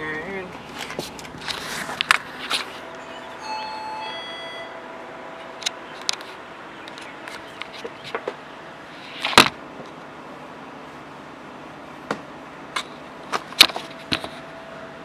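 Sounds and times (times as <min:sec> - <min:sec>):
brief ringing tone: 0:02.9 - 0:05.0.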